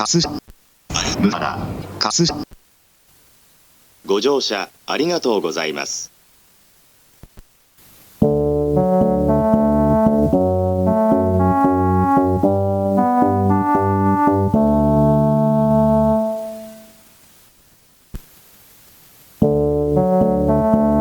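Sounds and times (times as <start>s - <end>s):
electronic keyboard tune: 8.2s - 17.0s, 19.4s - 21.0s.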